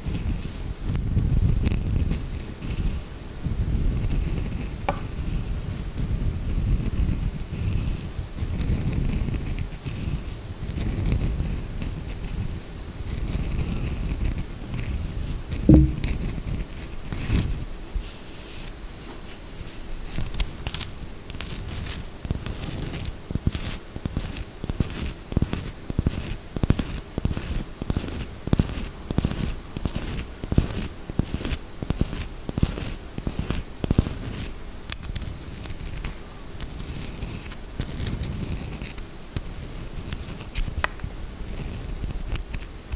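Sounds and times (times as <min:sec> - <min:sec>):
loud knock: 0:04.9 - 0:05.1, 0:15.7 - 0:16.2.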